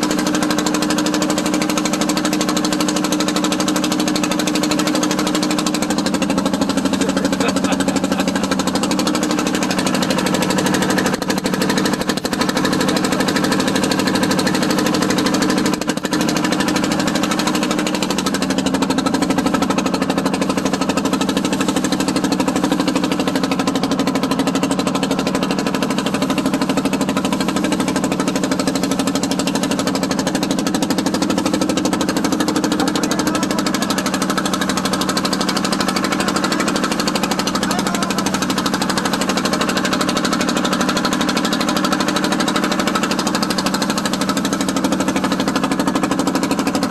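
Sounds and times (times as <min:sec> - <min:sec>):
motorboat engine pulsing: 0:00.0 - 0:46.9.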